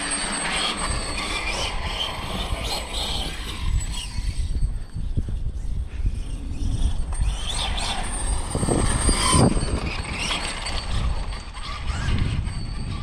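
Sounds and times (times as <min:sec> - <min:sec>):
wind rumble on microphone: 0:00.7 - 0:13.0
electric motor whining: 0:06.6 - 0:13.0.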